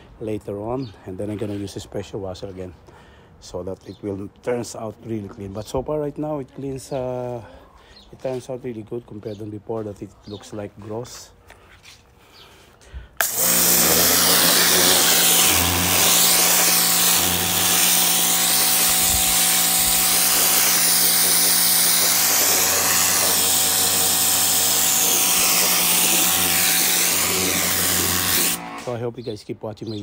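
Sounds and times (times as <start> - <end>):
pressure washer running: 13.2 - 29.0.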